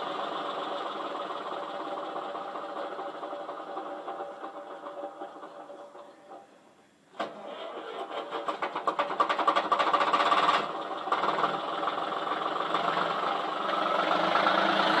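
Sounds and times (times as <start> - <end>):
car starter cranking: 7.1 - 12.0.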